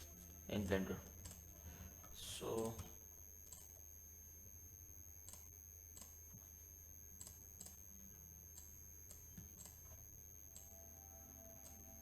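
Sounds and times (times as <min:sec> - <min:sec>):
faint high electronic whine: 0:00.0 - 0:12.0.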